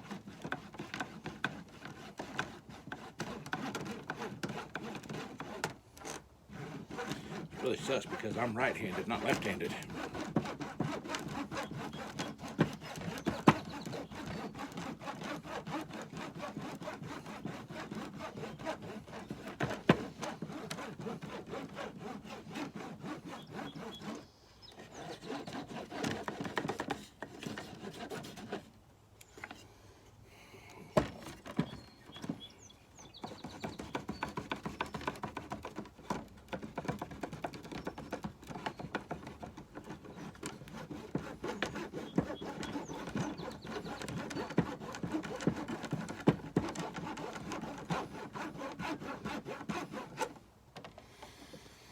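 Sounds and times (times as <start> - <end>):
wax scraping on plastic frame: 6.8 - 15.4.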